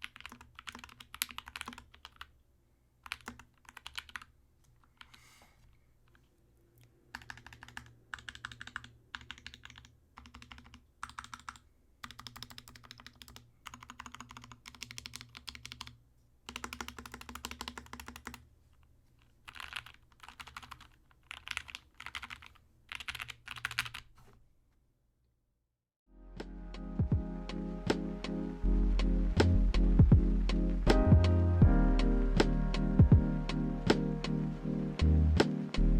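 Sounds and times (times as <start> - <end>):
mechanical keyboard typing: 0.0 - 2.3, 3.0 - 4.3, 7.1 - 18.4, 19.4 - 24.1.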